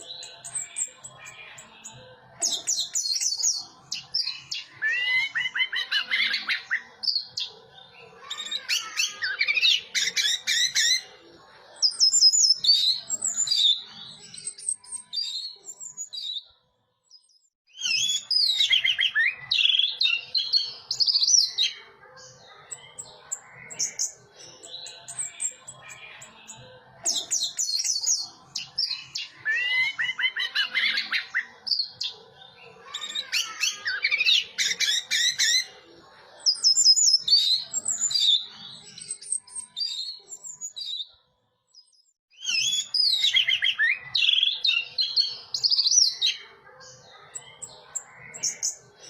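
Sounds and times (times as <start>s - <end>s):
thrush singing whistled phrases: 17.7s - 21.6s, 42.3s - 46.2s.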